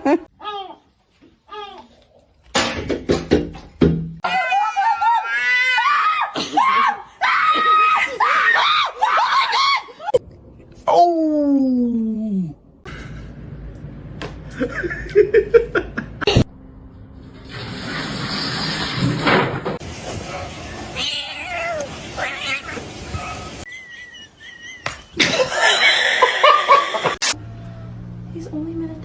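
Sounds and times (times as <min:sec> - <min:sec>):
cats meowing and yowling: 0:20.3 - 0:23.6.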